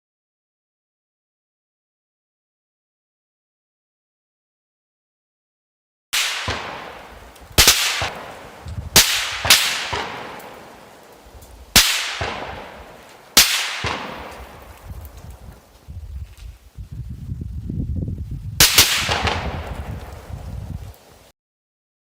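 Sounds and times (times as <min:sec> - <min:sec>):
rolling echo: 0:06.2 - 0:15.7, 0:18.6 - 0:20.4
rifle bullets cracking past: 0:06.2 - 0:16.5, 0:18.6 - 0:20.4.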